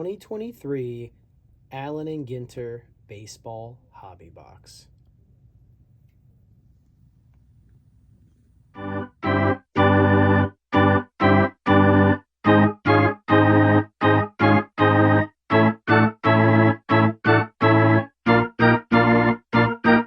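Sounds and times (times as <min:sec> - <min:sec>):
faint low hum: 0:00.0 - 0:09.1
organ-like keyboard chords: 0:08.8 - 0:20.0.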